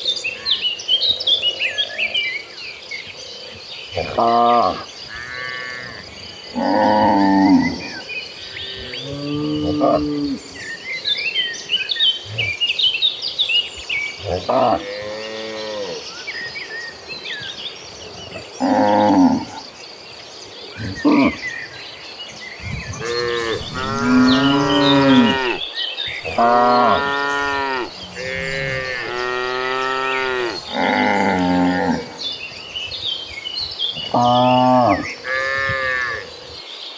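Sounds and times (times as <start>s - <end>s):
cattle mooing: 23.0s - 25.6s, 26.2s - 32.2s.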